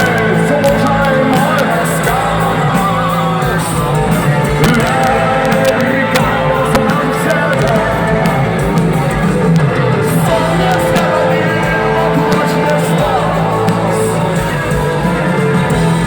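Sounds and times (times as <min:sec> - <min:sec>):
drums: 0:00.0 - 0:16.0
loud electric guitars: 0:00.0 - 0:16.0
person singing: 0:00.0 - 0:16.0.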